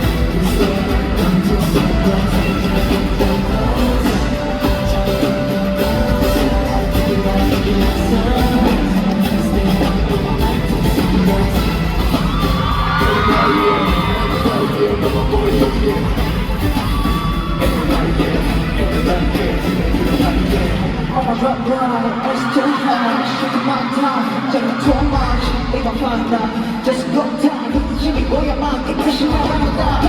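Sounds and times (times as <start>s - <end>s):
audience yelling and cheering: 0.0s - 30.0s
pop music through loudspeakers: 0.0s - 30.0s.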